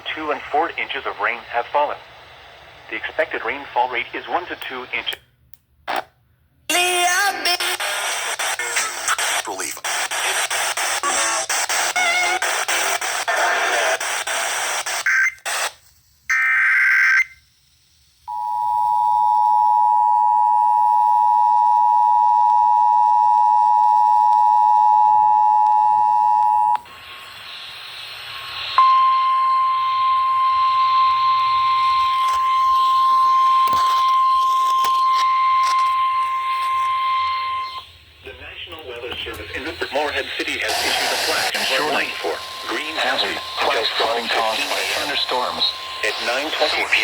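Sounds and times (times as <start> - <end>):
radio station audio: 0.0 - 5.3, 6.7 - 17.4, 25.7 - 47.0
hiss: 26.8 - 28.8, 40.7 - 46.9
data tones: 39.5 - 47.0
single-pitch warning tone: 40.7 - 47.0.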